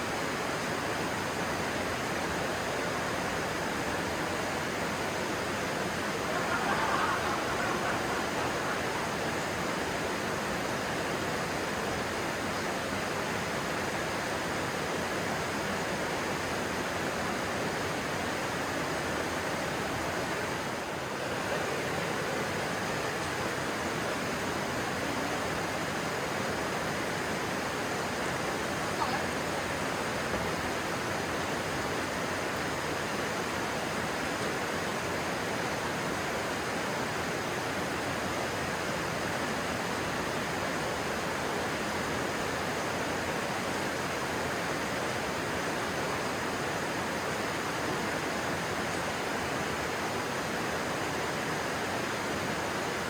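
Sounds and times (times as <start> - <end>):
stream water rushing: 0.0 - 53.0.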